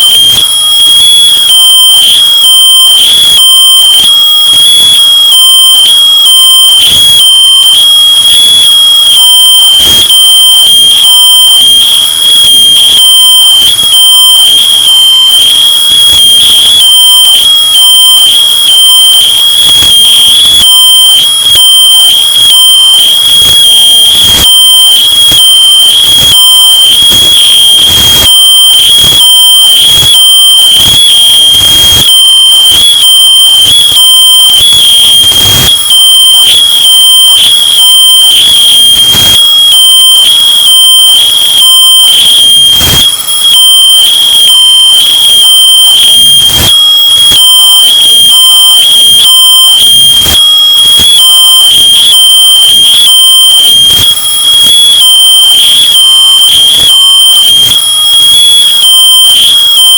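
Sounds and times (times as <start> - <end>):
distorted smoke detector beeping: 0.0 - 59.9.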